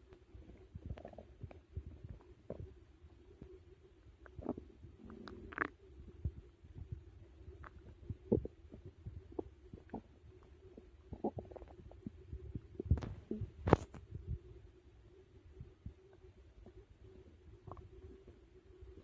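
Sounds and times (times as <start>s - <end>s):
stomach growling: 0.0s - 14.6s, 15.3s - 19.0s
stomach pops and gurgles: 0.0s - 19.0s.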